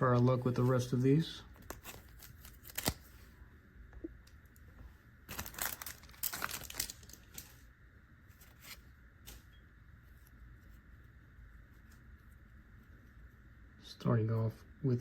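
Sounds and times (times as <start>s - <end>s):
foil wrapper tearing and crinkling: 1.6s - 3.2s, 5.3s - 7.7s.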